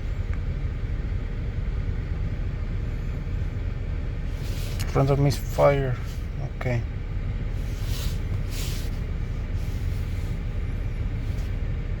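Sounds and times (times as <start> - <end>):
car engine idling: 0.0 - 12.0
short hisses: 7.6 - 10.5.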